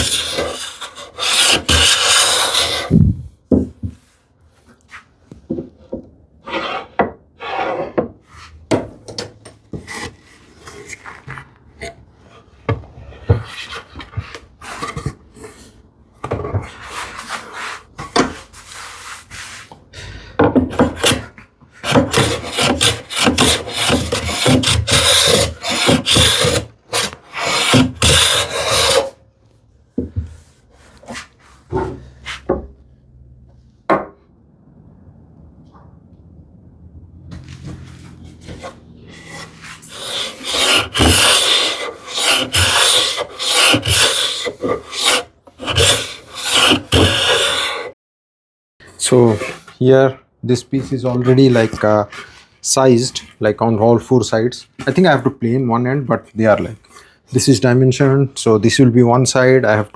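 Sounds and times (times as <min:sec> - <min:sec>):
hand tool rasping wood: 0:00.0 - 0:03.1, 0:20.6 - 0:29.2, 0:38.4 - 0:48.0, 0:50.8 - 0:52.3.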